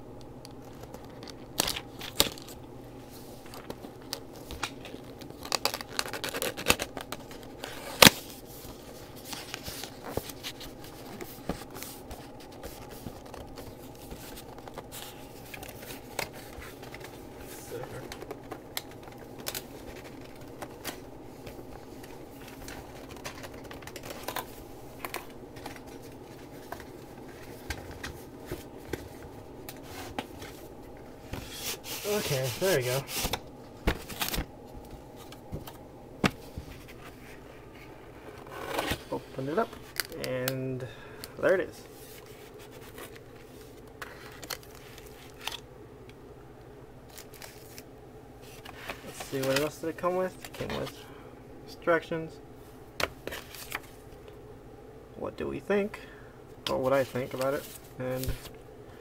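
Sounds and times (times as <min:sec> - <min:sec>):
low background hum: 0:00.0 - 0:59.0
packaging being opened by hand: 0:00.5 - 0:02.6, 0:03.4 - 0:30.6, 0:31.3 - 0:37.2, 0:42.0 - 0:45.6, 0:47.0 - 0:51.0.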